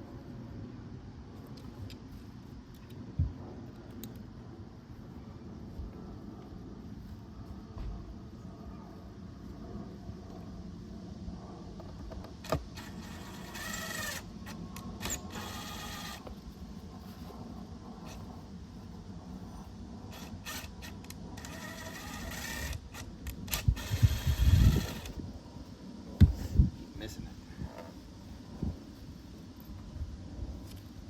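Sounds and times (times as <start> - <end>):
scraping and whirring of parts: 11.9 - 16.4, 19.5 - 25.2.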